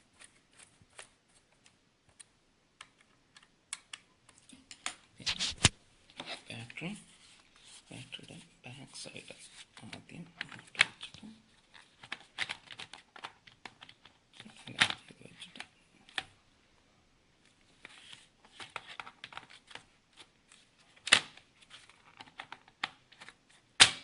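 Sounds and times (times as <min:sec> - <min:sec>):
sharp plastic snaps: 0:23.8 - 0:24.0.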